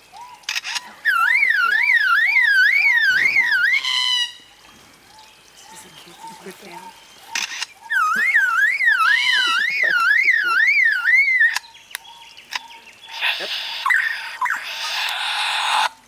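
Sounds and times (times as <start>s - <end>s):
bird whistling siren-like wail: 1.0s - 4.3s, 7.9s - 11.7s.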